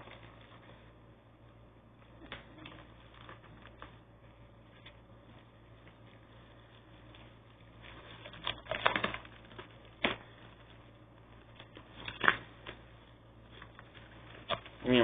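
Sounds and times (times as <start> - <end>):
plastic packaging crinkling: 2.0 - 15.0.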